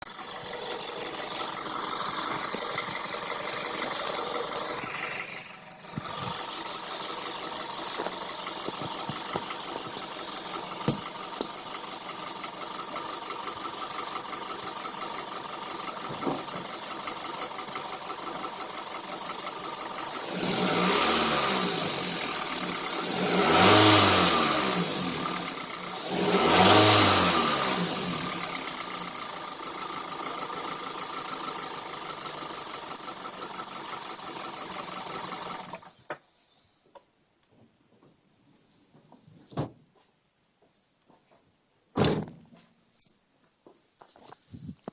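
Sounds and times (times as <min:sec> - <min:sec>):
rapid engine ticking: 0:00.0 - 0:35.9
car engine idling and revving: 0:00.0 - 0:36.0.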